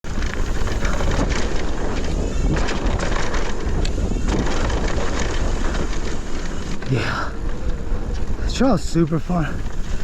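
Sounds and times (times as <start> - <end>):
low rumble of bike: 0.0 - 10.0
wind buffeting microphone: 0.0 - 10.0
bike knocks and rattles: 0.1 - 6.8.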